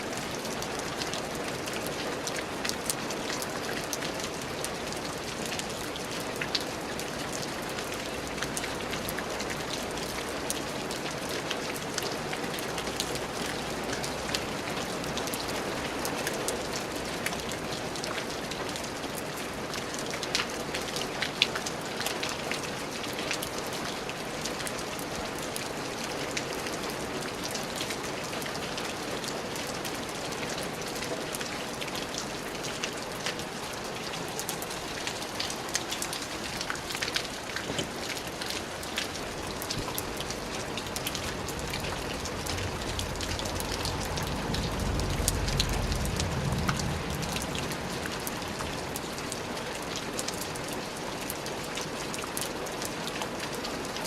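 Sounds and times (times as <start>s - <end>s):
steady rain falling: 0.0s - 54.0s
low rumble: 40.8s - 48.6s.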